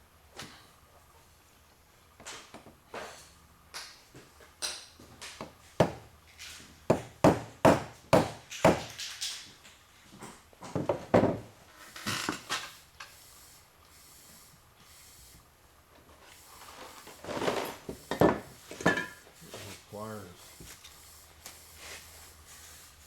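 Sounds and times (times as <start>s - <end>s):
hand tools knocking and clicking: 6.9s - 9.2s.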